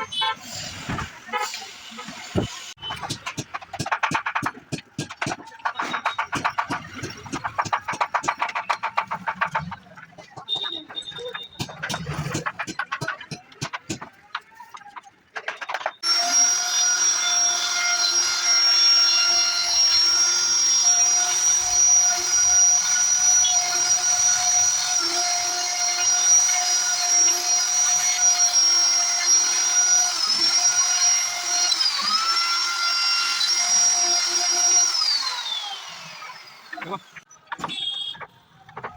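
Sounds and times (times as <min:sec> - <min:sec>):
wood router whining: 0:16.0 - 0:38.2.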